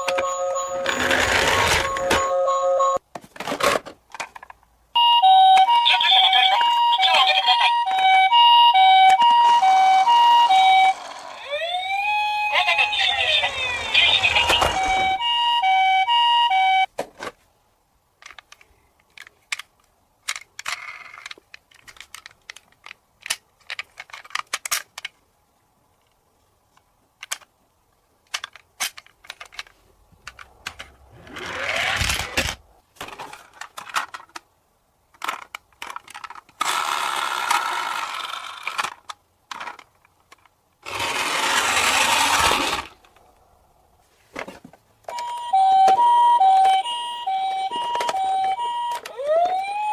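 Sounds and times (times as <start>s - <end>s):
toy car electronic beeps: 0.0s - 3.0s, 5.0s - 16.9s, 45.1s - 49.9s
plastic toys clicking and clattering: 3.2s - 4.6s, 18.2s - 25.2s, 26.0s - 27.6s, 28.2s - 34.5s, 35.1s - 43.2s, 44.4s - 49.9s.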